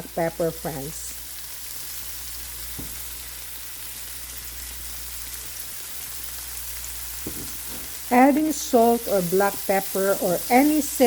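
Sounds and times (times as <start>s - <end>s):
vegetables sizzling in oil: 0.0s - 11.0s
light knock: 7.2s - 7.8s.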